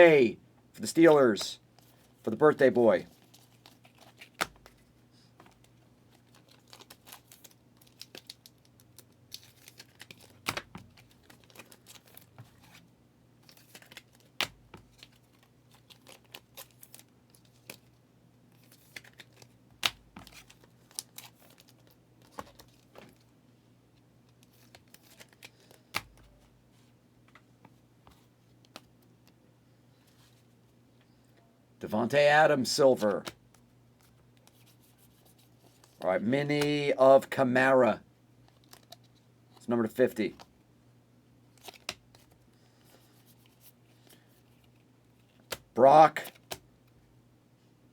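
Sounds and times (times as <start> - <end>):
cards being handled: 3.1 - 12.8, 13.4 - 23.3, 24.3 - 26.6, 32.9 - 36.9, 41.6 - 46.6
card wrappers crinkling and tearing: 3.2 - 12.8, 13.4 - 18.0, 18.6 - 22.9, 24.4 - 26.3, 41.6 - 42.4.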